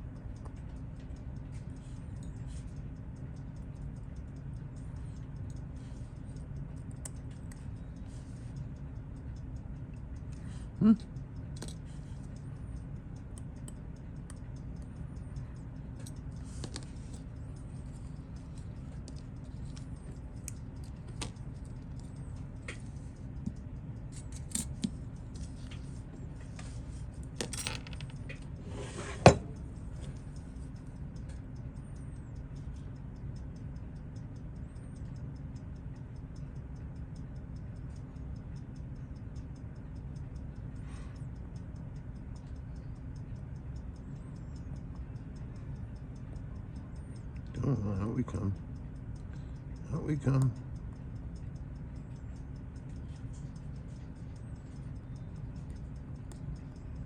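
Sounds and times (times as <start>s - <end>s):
steady low hum: 0.0s - 57.0s
metallic tool clicks and taps: 11.1s - 25.8s, 27.2s - 28.6s.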